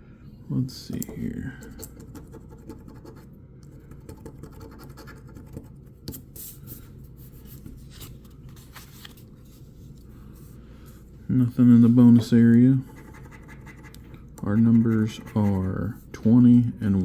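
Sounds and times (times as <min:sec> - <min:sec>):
scratching lottery ticket: 0:01.6 - 0:05.8, 0:11.8 - 0:16.5.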